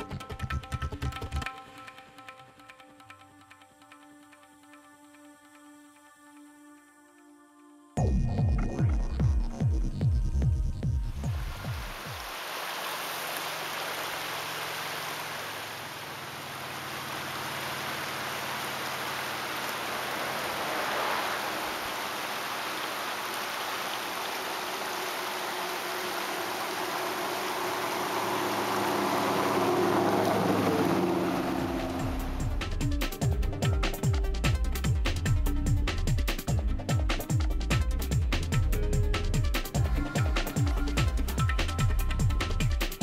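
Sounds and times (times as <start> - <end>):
wind and road noise: 11.3 - 33.0
motorcycle engine drone: 24.1 - 33.4.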